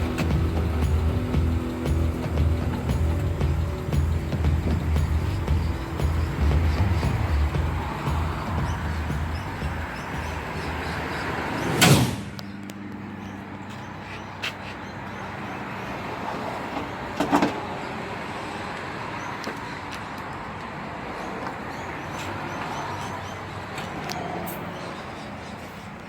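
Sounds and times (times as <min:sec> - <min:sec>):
loud bangs: 0:00.0 - 0:12.7
low steady rumble: 0:00.0 - 0:12.8.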